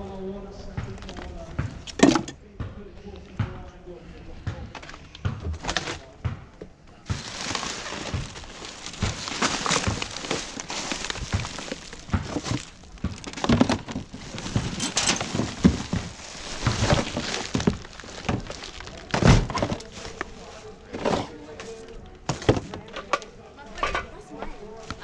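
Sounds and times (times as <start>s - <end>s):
knocks of objects being moved: 1.0s - 2.4s, 6.6s - 23.1s
rustling of bags and packaging: 4.8s - 6.2s, 7.0s - 23.0s.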